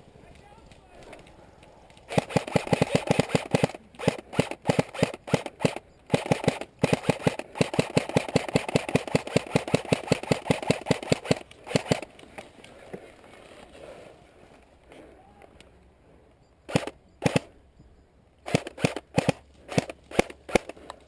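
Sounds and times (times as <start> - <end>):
airsoft gun firing bursts: 2.0 - 12.1, 16.7 - 17.5, 18.4 - 20.8.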